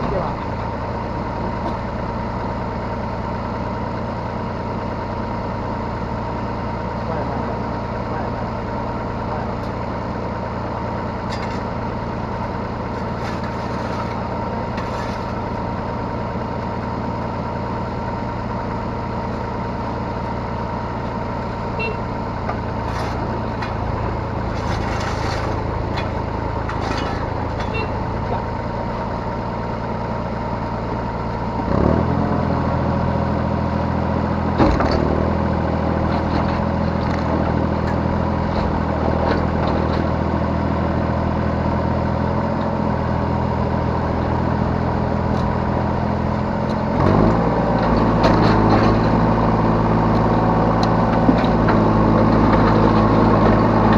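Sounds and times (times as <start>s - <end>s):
excavator diesel engine running: 0.0s - 53.9s.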